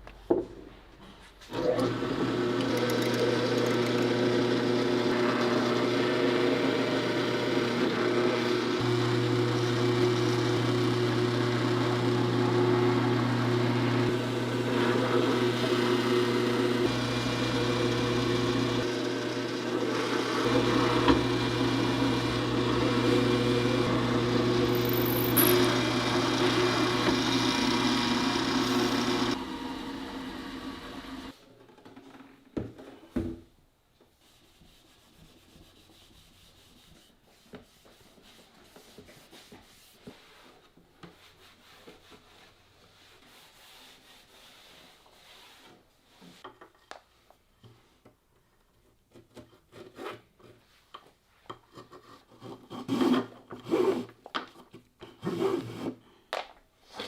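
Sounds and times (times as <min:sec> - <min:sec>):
woodworking power tool humming: 0:01.5 - 0:31.4.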